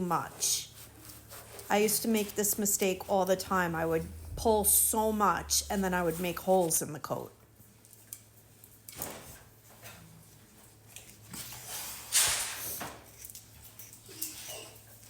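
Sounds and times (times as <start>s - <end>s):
faint low hum: 0.0s - 8.8s.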